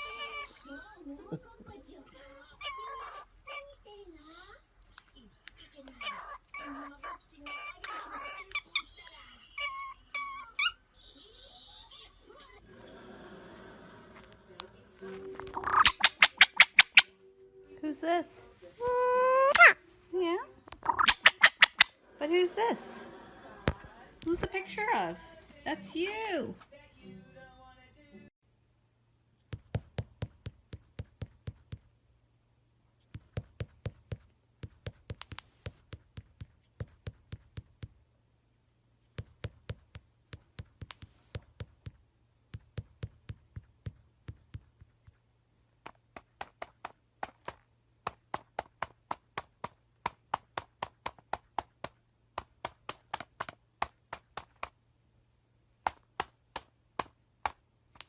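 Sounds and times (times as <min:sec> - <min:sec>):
sharp taps in quick runs: 0:33.1 - 0:38.0, 0:45.8 - 0:54.8.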